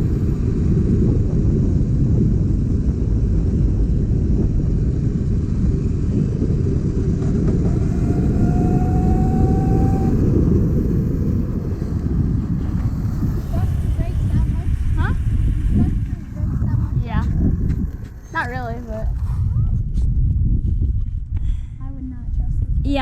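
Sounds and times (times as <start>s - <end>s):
wind and road noise rumble: 0.0s - 23.0s
faint thin whine: 5.7s - 19.0s.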